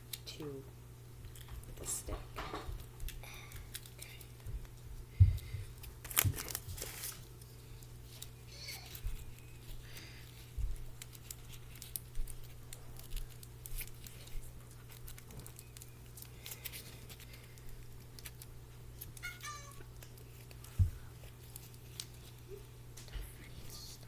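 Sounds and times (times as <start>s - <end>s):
high pitched cry-like call: 19.2s - 19.8s.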